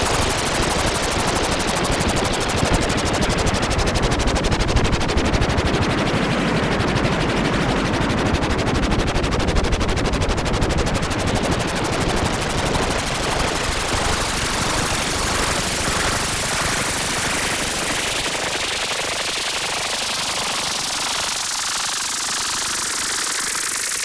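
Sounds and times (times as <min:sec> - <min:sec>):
synthesized pulsing rattle: 0:00.0 - 0:05.5, 0:12.0 - 0:24.0.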